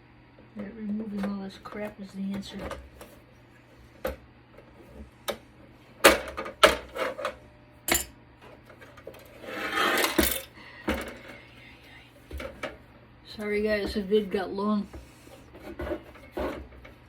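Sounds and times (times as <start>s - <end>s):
scraping rub: 9.3s - 10.2s.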